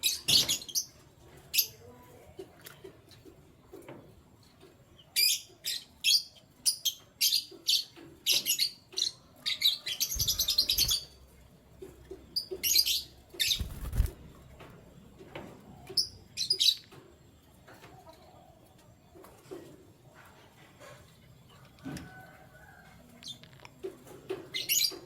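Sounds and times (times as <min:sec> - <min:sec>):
canaries chirping: 0:05.2 - 0:11.3, 0:12.3 - 0:14.1.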